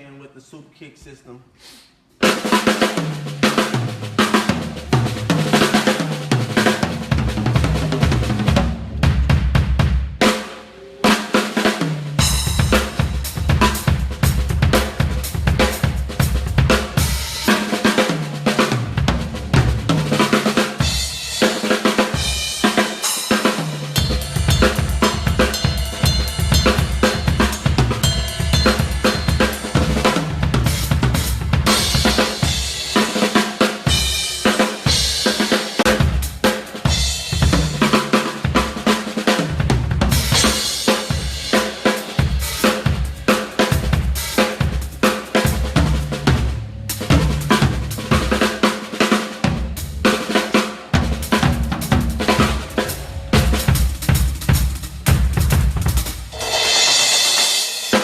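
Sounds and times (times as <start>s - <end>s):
snare and bass drum: 2.2s - 58.0s
crash cymbals and hi-hats: 20.1s - 39.3s, 40.1s - 46.2s, 51.2s - 58.0s.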